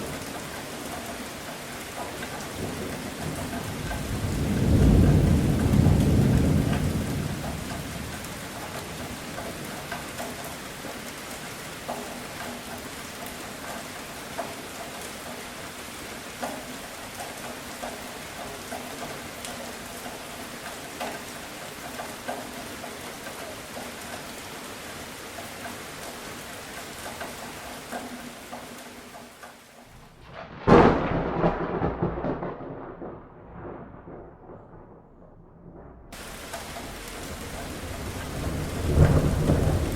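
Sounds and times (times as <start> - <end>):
raindrops ticking: 0.0 - 30.1, 36.1 - 39.9
steady rain: 0.0 - 34.9, 36.1 - 39.9
thunder rumbling: 2.5 - 10.0, 29.9 - 39.9.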